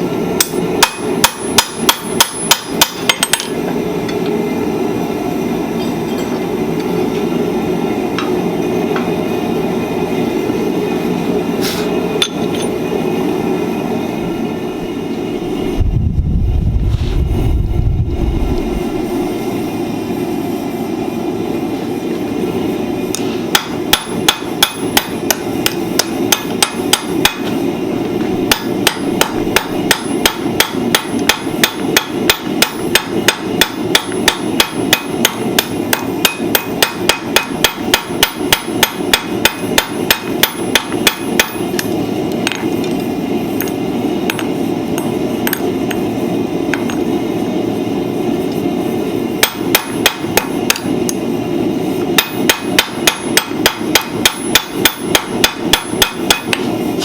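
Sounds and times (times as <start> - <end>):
rushing hum: 0.0 - 57.0
hammer striking steel on anvil: 0.4 - 4.3, 11.8 - 12.8, 23.1 - 27.6, 28.5 - 42.7, 43.6 - 46.0, 49.4 - 51.2, 52.2 - 57.0.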